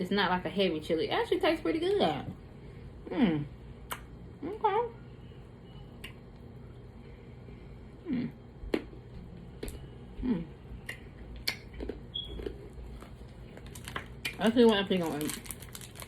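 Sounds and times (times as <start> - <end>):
mouth clicks and smacks: 3.9 - 4.1, 6.0 - 6.2, 10.8 - 12.0
person humming: 8.0 - 8.4, 10.2 - 10.6.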